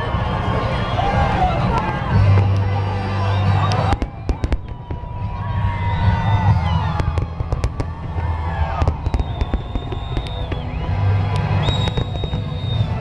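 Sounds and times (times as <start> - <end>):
deep rumble: 0.0 - 13.0
fireworks crackles and bangs: 0.1 - 13.0
high steady whistle: 3.0 - 6.4, 8.6 - 13.0.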